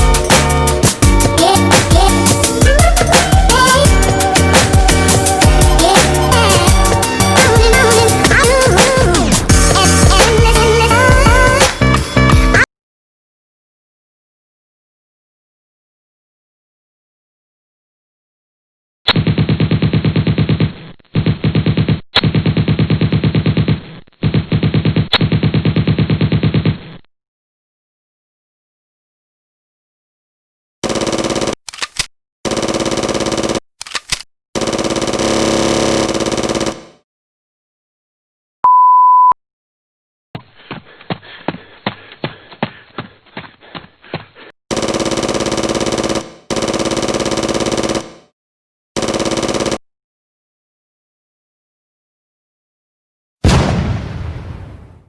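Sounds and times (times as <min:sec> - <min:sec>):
machine-gun bursts: 0:30.8 - 0:37.0, 0:44.7 - 0:48.3, 0:49.0 - 0:49.8
automatic gunfire sound effect: 0:44.7 - 0:48.3.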